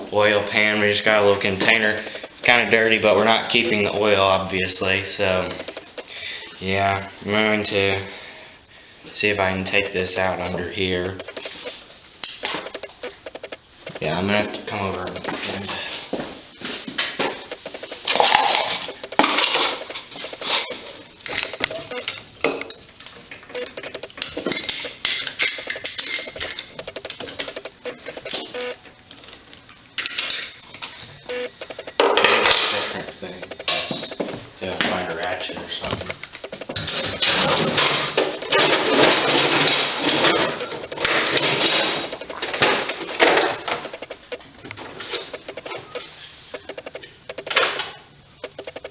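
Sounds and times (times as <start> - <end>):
metal tools clattering: 24.1 - 27.6, 30.0 - 30.6, 36.3 - 43.9
metal hand tools clinking: 24.2 - 27.5.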